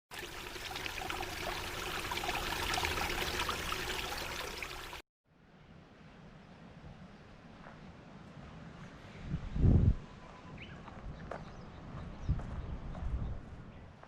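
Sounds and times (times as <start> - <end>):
stream water babbling: 0.1 - 5.0
faint outdoor ambience: 0.2 - 14.0.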